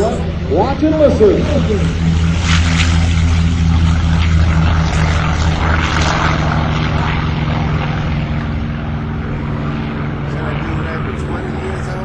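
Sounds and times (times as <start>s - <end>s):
deep propeller engine drone: 0.0s - 12.0s.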